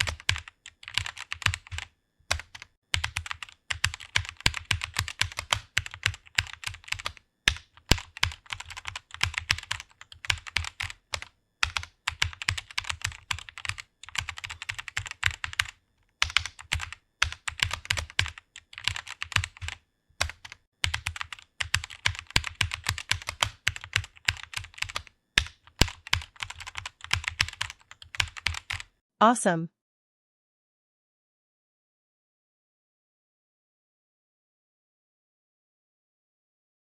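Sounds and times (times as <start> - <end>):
fast typing on keyboard: 0.0 - 29.0.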